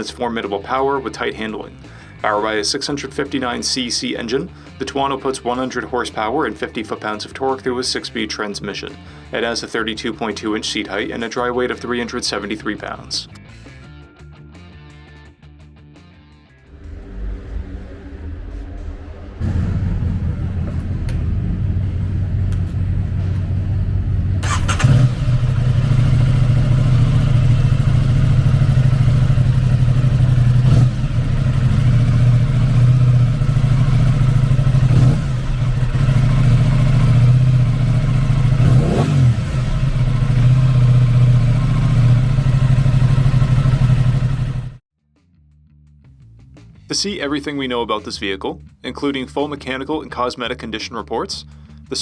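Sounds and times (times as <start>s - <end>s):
motorcycle engine idling: 19.4s - 44.8s.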